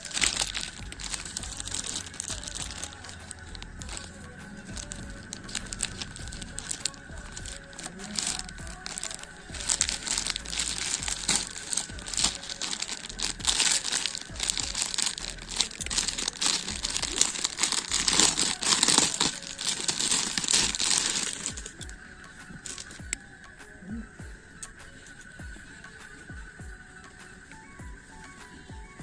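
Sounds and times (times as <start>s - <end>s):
packaging crinkling: 0.0s - 21.9s, 22.6s - 23.1s.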